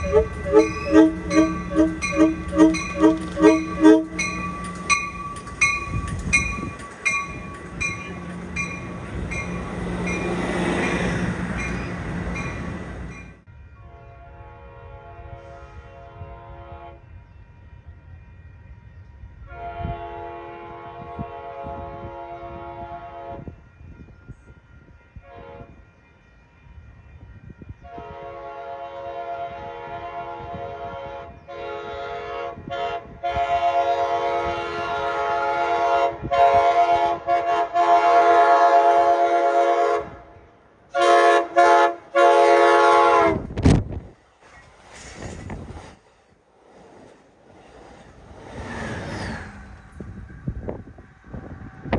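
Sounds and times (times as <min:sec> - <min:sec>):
train air horn blasts: 0:00.0 - 0:13.1, 0:13.8 - 0:17.2, 0:19.4 - 0:23.6, 0:25.2 - 0:25.8, 0:27.8 - 0:43.7
train rumble: 0:00.0 - 0:51.9.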